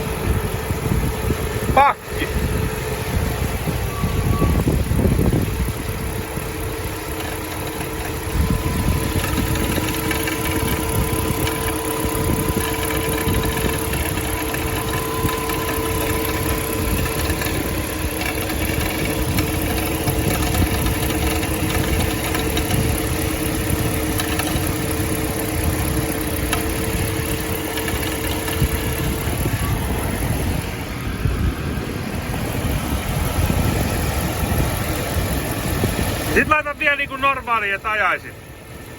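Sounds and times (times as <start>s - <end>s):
car engine idling: 0.0s - 38.9s
engine knocking: 0.0s - 38.9s
steady hum: 0.0s - 38.9s.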